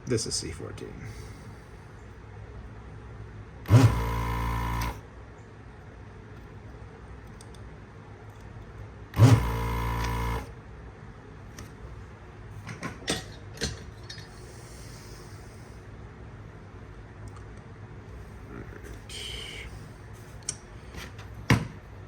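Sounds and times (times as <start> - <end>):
vacuum pump motor hum: 3.6 - 5.1, 9.1 - 10.6.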